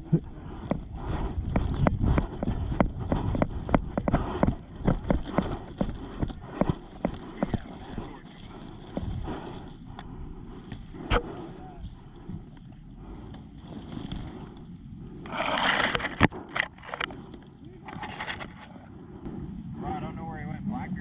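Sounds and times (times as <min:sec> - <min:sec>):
quick footsteps on ground: 0:00.6 - 0:09.9.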